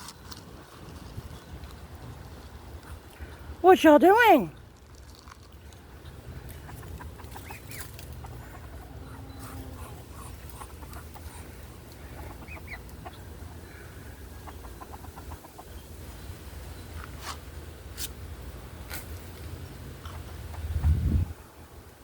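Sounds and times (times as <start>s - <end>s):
ducks and rooster clucking: 5.1s - 17.7s, 18.4s - 21.6s.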